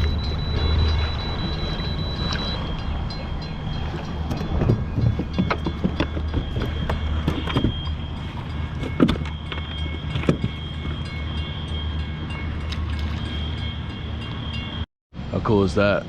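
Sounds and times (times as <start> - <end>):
metallic clanks and creaks: 0.0 - 11.4
bridge machinery humming: 0.0 - 14.8
high whine: 0.0 - 15.7.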